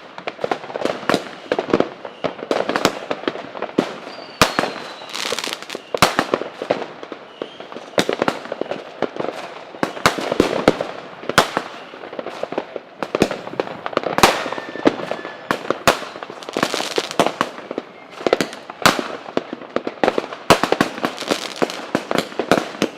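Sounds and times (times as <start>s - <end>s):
faint fireworks whistle: 0.0s - 22.9s
fireworks bangs: 0.0s - 22.9s
fireworks crackling: 0.0s - 22.9s.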